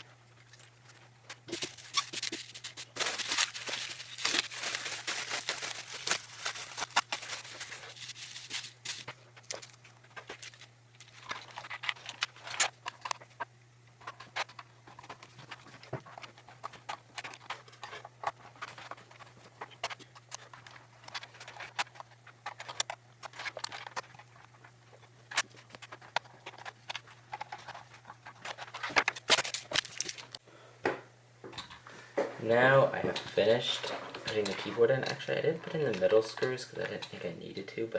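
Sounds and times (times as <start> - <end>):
plastic parts clicking and rustling: 0.6 - 13.3, 14.0 - 30.4.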